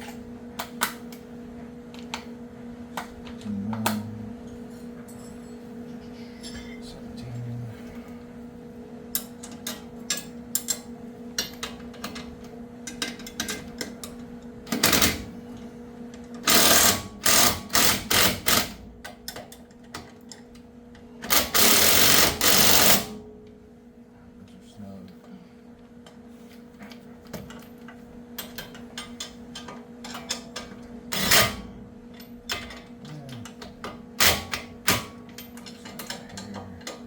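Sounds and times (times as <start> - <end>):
power wrench running: 14.7 - 15.3, 16.4 - 18.8, 21.3 - 23.2, 31.1 - 31.6.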